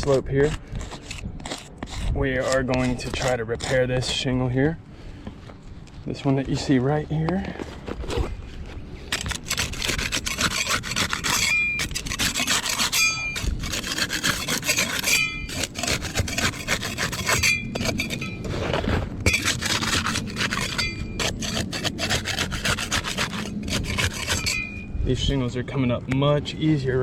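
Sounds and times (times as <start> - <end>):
metal tool scraping under shingle: 0.0 - 4.6, 6.5 - 25.0
short metallic ring: 24.4 - 24.9.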